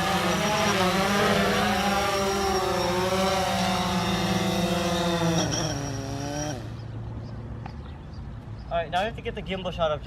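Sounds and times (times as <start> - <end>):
drone rotors whining: 0.0 - 7.0.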